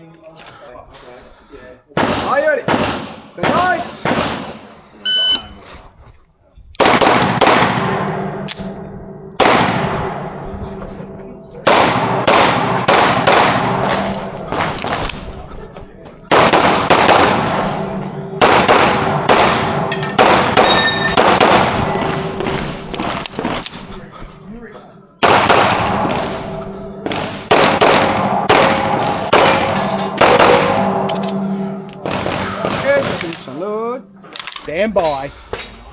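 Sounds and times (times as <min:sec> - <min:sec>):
pistol shots echoing: 0:02.0 - 0:04.7, 0:06.8 - 0:08.8, 0:09.4 - 0:10.4, 0:11.6 - 0:15.4, 0:16.3 - 0:23.9, 0:25.2 - 0:33.6.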